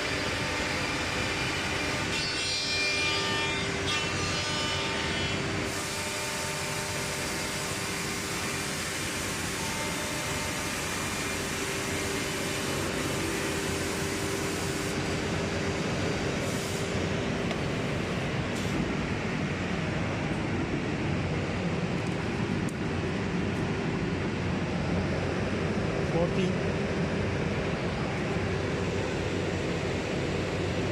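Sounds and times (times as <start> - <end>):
machine noise hiss: 0.0 - 19.1.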